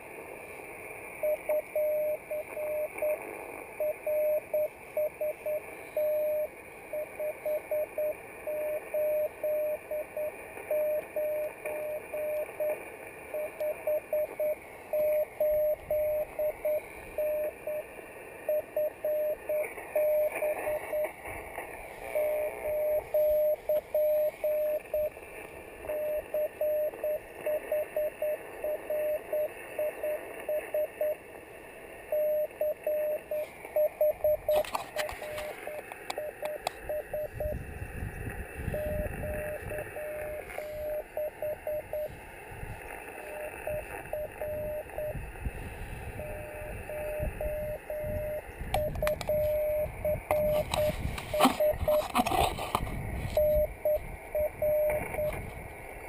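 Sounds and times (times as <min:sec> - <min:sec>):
receiver hiss: 0:00.0 - 0:56.0
morse code tone: 0:01.2 - 0:03.2, 0:03.8 - 0:17.9, 0:18.5 - 0:21.1, 0:22.1 - 0:25.2, 0:25.9 - 0:31.2, 0:32.1 - 0:37.6, 0:38.7 - 0:42.2, 0:43.2 - 0:45.2, 0:46.1 - 0:55.5.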